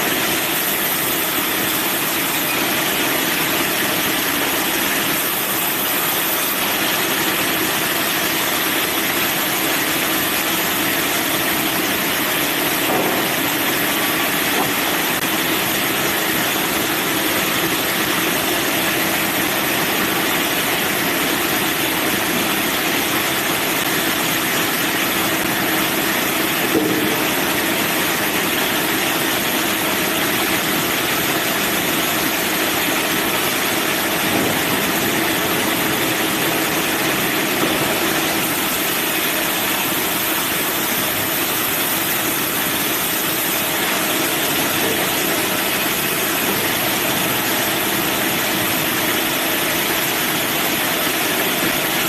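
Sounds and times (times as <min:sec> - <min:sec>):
band sawmill running: 0:00.0 - 0:52.0.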